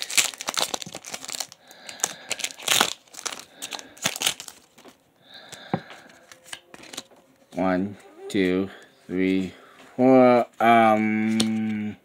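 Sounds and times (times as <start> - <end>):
foil wrapper crinkling and tearing: 0.0 - 5.6, 6.2 - 7.1.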